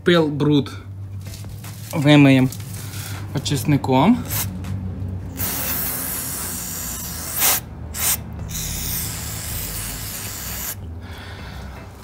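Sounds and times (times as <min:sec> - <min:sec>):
aerosol can spraying: 0:05.4 - 0:10.8.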